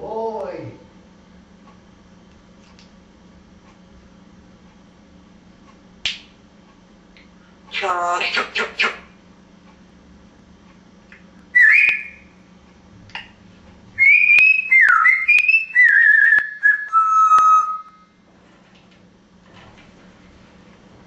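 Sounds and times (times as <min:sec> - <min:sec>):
parrot whistling: 0:11.5 - 0:12.3, 0:14.0 - 0:18.1.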